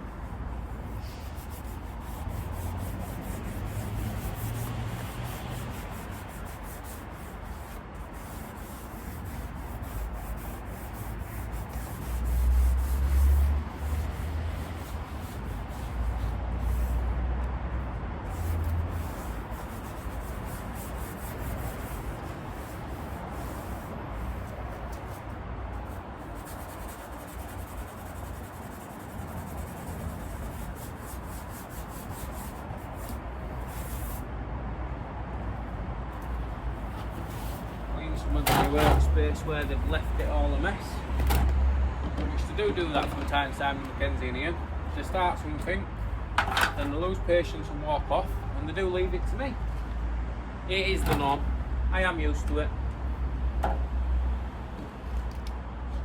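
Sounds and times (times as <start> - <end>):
sanding on leather seat: 0.8 - 17.1, 18.3 - 34.2.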